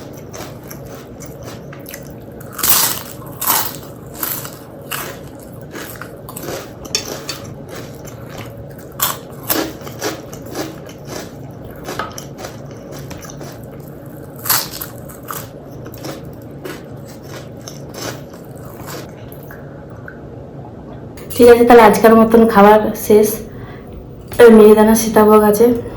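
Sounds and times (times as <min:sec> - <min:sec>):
person chewing crunchy food: 0:00.0 - 0:19.7.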